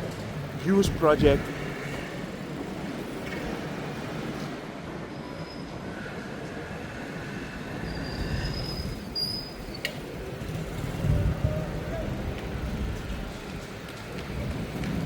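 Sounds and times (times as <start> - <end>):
city street noise: 0.0 - 15.0.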